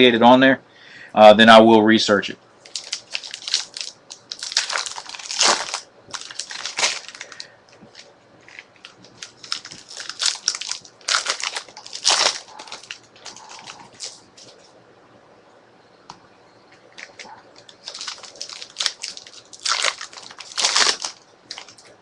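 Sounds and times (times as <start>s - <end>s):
plastic packaging crinkling: 2.6s - 14.7s, 16.8s - 22.0s.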